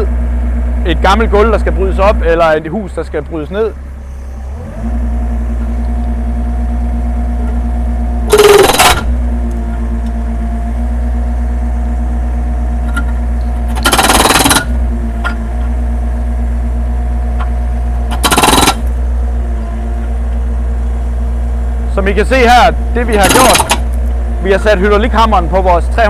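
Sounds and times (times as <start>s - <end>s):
diesel engine running: 0.0s - 26.0s
hydraulic breaker hammer blows: 7.4s - 10.2s, 12.8s - 15.8s, 17.4s - 19.0s, 22.3s - 24.0s.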